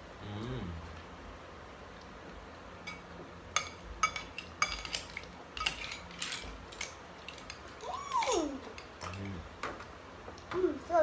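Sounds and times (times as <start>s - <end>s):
cutlery clinking on plates: 3.6s - 7.6s.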